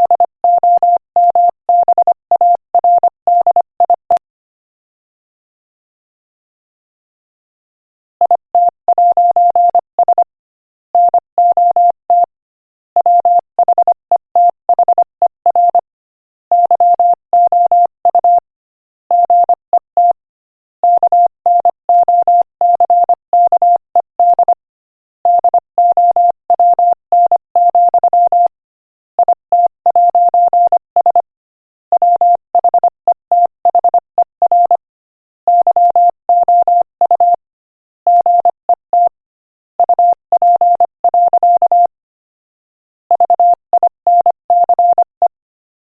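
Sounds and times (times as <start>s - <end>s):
morse code tone: 38.1s - 39.2s, 39.8s - 41.9s, 43.1s - 45.3s.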